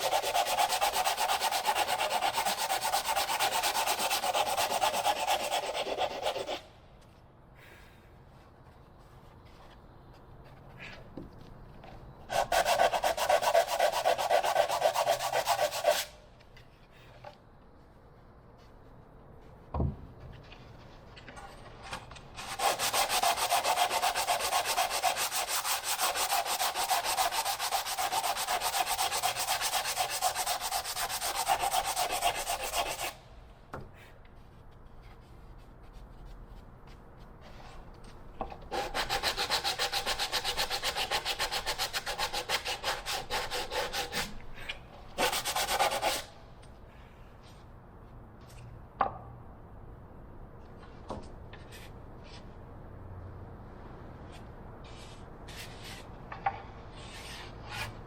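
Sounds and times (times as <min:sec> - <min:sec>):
sanding block rasping on wood: 0:00.0 - 0:06.6, 0:12.3 - 0:16.1, 0:22.4 - 0:33.2, 0:38.7 - 0:44.4, 0:45.2 - 0:46.3.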